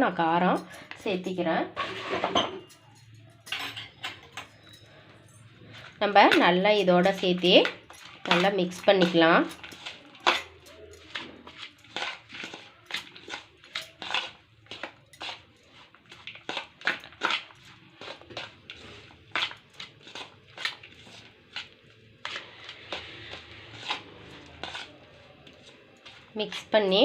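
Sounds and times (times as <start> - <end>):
food being mixed in a bowl: 0.1 - 27.0.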